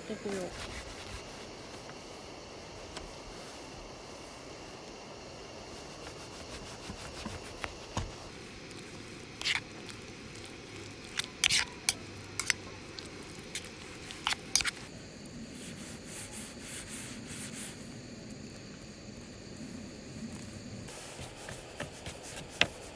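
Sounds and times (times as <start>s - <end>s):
low background hiss: 0.0s - 21.5s
small objects clicking and tapping: 9.4s - 14.8s.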